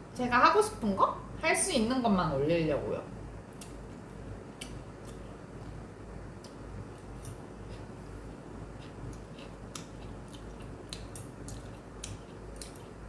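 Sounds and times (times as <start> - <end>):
low room hum: 0.0 - 13.0
person chewing food: 3.5 - 5.8, 6.4 - 13.0.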